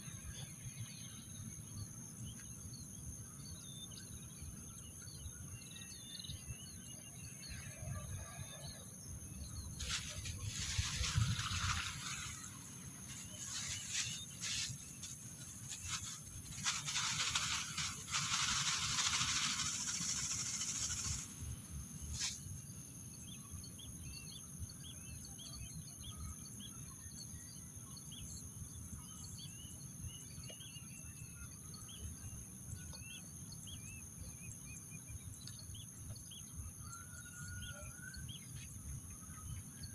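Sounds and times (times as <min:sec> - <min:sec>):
loud hissing noise bursts: 0:09.8 - 0:22.4
high-pitched insect drone: 0:09.8 - 0:22.6.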